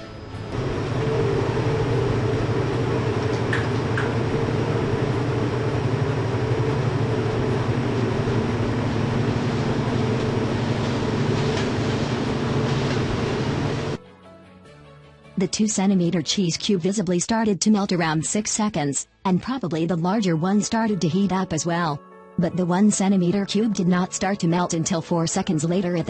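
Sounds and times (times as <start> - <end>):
microwave oven humming: 0.0 - 14.0.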